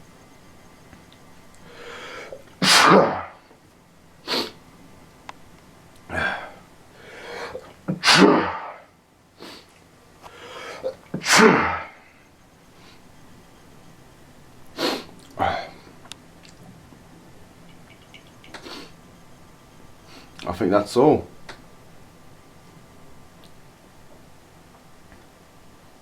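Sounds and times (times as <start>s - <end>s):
person sneezing: 2.6s - 3.4s, 4.3s - 4.6s, 6.1s - 6.6s, 7.2s - 9.6s, 10.7s - 12.1s.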